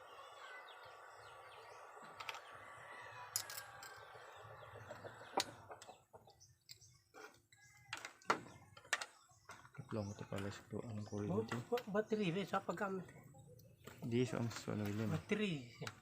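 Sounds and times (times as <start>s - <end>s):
small birds chirping: 0.0s - 16.0s
chickens clucking: 3.7s - 7.8s.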